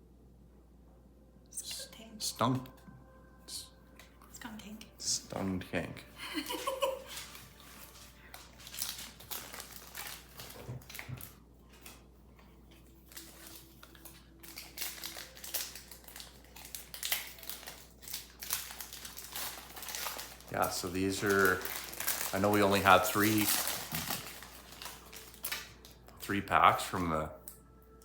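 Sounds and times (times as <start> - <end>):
card pack packaging crinkling: 6.3 - 12.0, 12.7 - 27.1
cards rustling: 6.5 - 12.0, 12.7 - 27.1.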